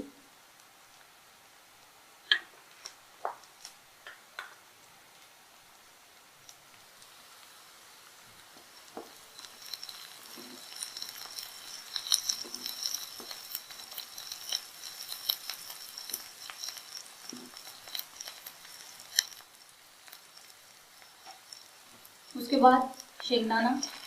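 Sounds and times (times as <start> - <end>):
onions sizzling in oil: 0.2 - 24.0
stirring clicks in pan: 8.4 - 24.0.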